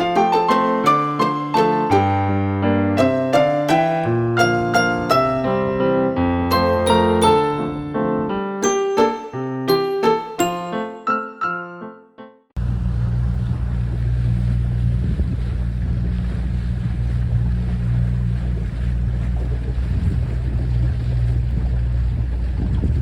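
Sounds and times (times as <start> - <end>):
engine humming: 12.6 - 23.0
wind on microphone: 12.6 - 23.0.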